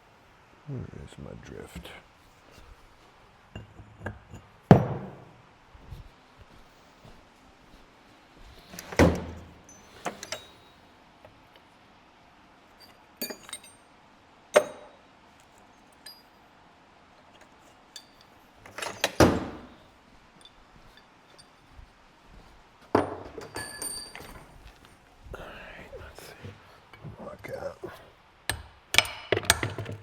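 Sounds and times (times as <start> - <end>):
metal tools knocking and clinking: 3.6 - 5.2, 8.8 - 10.8, 12.8 - 13.9, 14.6 - 15.0, 16.0 - 16.4, 17.4 - 21.7, 22.9 - 24.9, 28.5 - 30.0
high metallic ring: 23.4 - 24.6.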